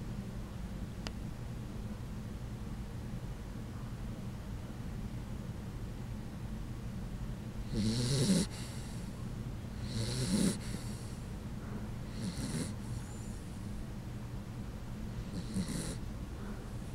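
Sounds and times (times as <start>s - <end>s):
dog snoring: 7.6s - 9.1s, 9.8s - 11.2s, 12.1s - 13.5s, 15.2s - 16.0s.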